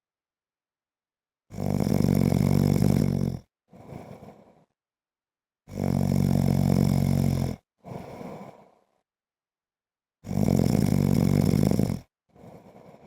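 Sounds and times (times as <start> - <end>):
man snoring: 1.5 - 4.7, 5.7 - 8.7, 10.2 - 13.0
quiet breath: 3.3 - 4.8, 7.8 - 9.1, 12.3 - 13.0.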